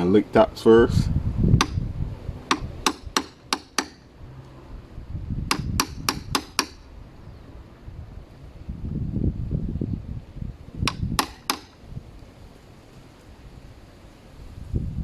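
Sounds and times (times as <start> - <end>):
hammer tapping on chisel: 1.6 - 1.8, 2.5 - 4.0, 5.5 - 6.8, 10.9 - 11.8.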